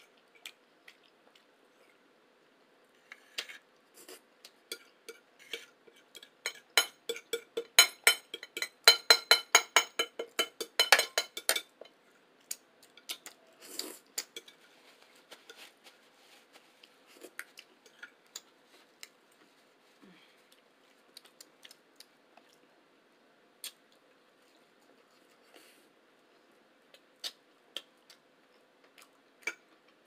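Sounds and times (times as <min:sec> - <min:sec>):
cutlery clinking on a plate: 0:04.7 - 0:11.9.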